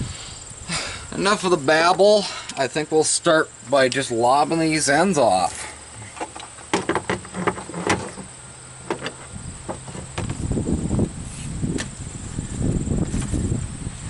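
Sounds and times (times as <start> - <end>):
crickets chirping: 0.0 - 14.0
low rumbling handling noise: 5.5 - 14.0.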